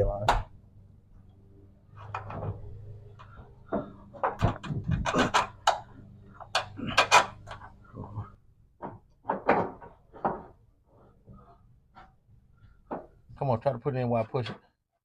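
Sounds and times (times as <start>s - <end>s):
metallic clunks and scrapes: 1.9s - 7.9s.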